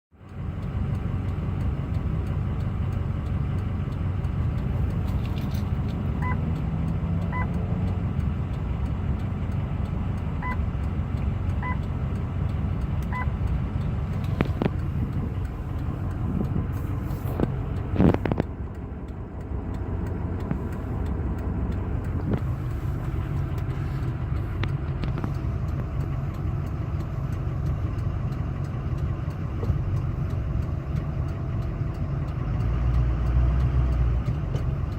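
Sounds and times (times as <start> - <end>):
diesel engine idling: 0.2 - 34.9
engine whine: 0.2 - 34.9
short beeps: 6.2 - 6.4, 10.4 - 10.6.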